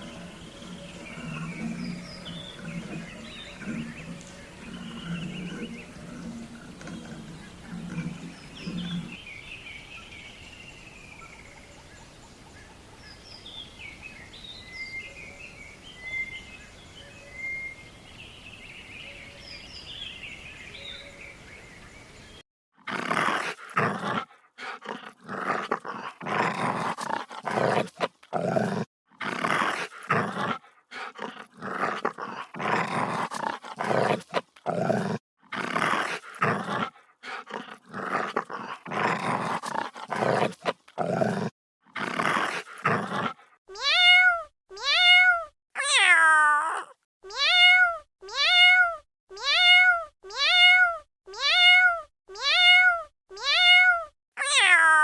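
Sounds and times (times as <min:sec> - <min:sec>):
animal growling: 0:00.0 - 0:09.6, 0:22.8 - 0:43.6
cat meowing: 0:43.7 - 0:55.0.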